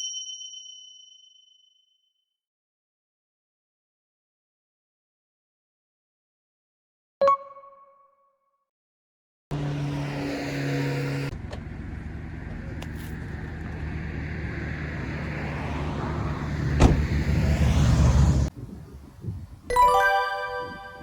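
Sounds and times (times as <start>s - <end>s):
car engine and road rumble: 9.5s - 19.7s.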